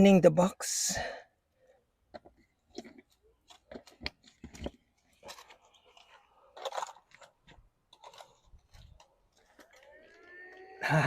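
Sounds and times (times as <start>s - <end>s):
crunching rustle: 2.7s - 10.8s.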